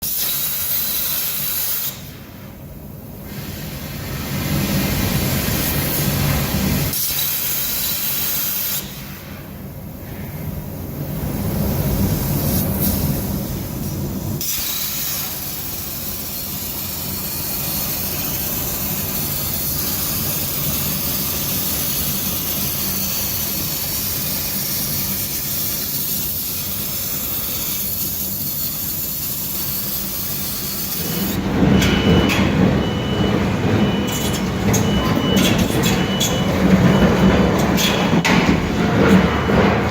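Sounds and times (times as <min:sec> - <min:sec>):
plasma torch hissing: 0:00.0 - 0:02.4, 0:03.2 - 0:09.5, 0:11.1 - 0:31.4
low machine rumble: 0:31.0 - 0:39.9.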